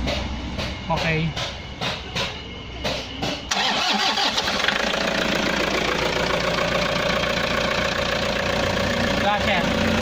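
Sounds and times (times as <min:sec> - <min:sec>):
diesel engine idling: 0:00.0 - 0:10.0
diesel engine cranking: 0:03.4 - 0:10.0.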